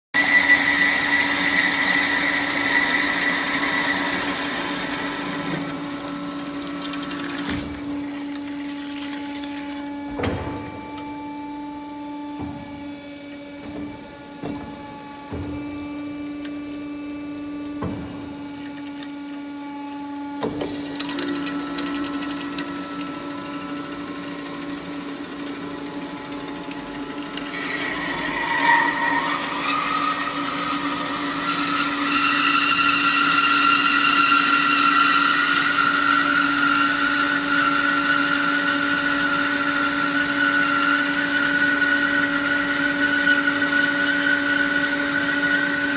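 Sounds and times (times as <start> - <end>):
band saw humming: 0.2 - 24.2, 27.5 - 45.9
sharp clicks and knocks: 6.7 - 19.3
saw blade screeching on metal: 27.5 - 38.2.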